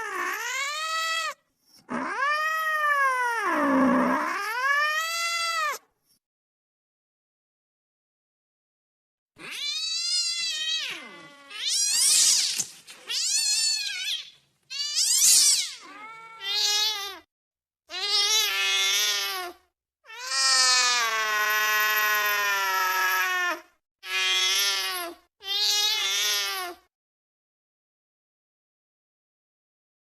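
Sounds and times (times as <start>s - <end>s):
cat yowling: 0.0s - 5.8s, 9.4s - 17.3s, 17.9s - 26.8s.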